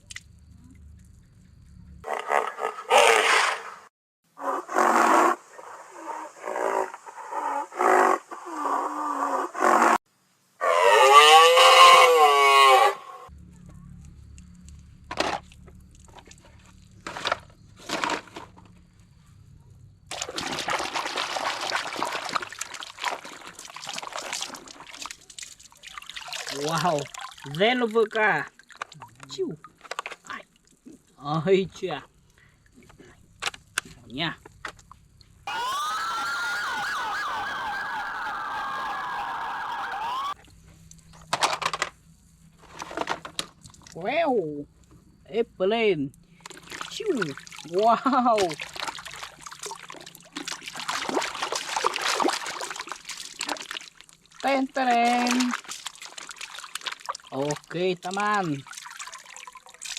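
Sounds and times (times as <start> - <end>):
running water rushing: 20.1 - 29.0, 35.5 - 40.4, 46.5 - 59.9
water splashing: 20.1 - 31.1, 46.4 - 59.9
electronic toy siren: 35.5 - 40.4.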